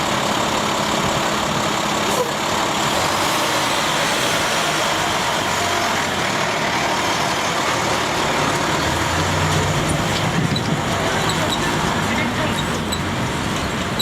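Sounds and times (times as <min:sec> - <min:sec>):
heavy vehicle engine running: 0:00.0 - 0:14.0
outdoor traffic noise: 0:00.0 - 0:14.0.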